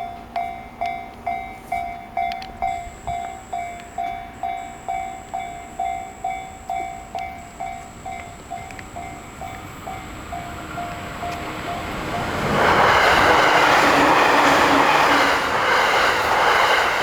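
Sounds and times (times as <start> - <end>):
level crossing warning bell: 0.0 - 13.4.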